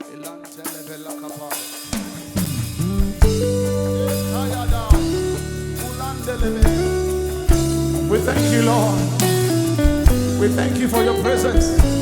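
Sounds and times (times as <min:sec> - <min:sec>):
drum and cymbal hits: 0:00.5 - 0:12.0
bass guitar: 0:02.0 - 0:12.0
sustained keyboard notes: 0:02.5 - 0:12.0.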